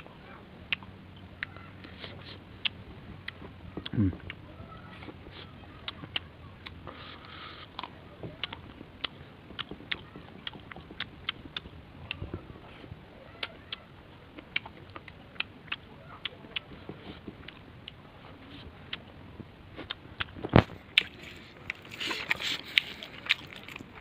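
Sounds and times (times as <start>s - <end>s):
person chewing with wet clicks: 0.0s - 24.0s.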